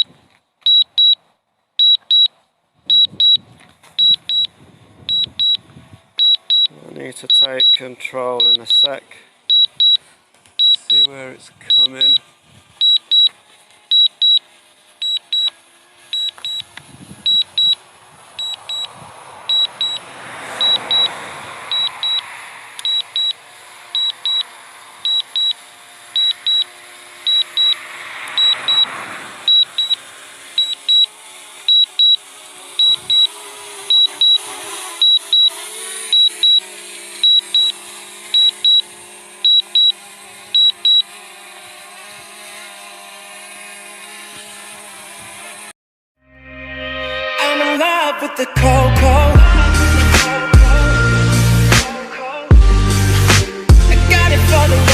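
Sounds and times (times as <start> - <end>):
paired high electronic beeps: 0.7 - 1.2, 1.8 - 2.3, 2.9 - 3.4, 4.0 - 4.5, 5.1 - 5.6, 6.2 - 6.7, 7.3 - 7.8, 8.4 - 10.0, 10.6 - 11.1, 11.7 - 12.2, 12.8 - 13.3, 13.9 - 14.4, 16.1 - 16.7, 17.3 - 17.8, 18.4 - 18.9, 19.5 - 20.0, 20.6 - 21.1, 21.7 - 23.4, 24.0 - 24.5, 25.1 - 25.6, 26.2 - 26.7, 27.3 - 28.9, 29.5 - 30.0, 30.6 - 31.1, 31.7 - 32.2, 32.8 - 33.3, 33.9 - 37.8, 38.4 - 40.0, 40.6 - 41.1.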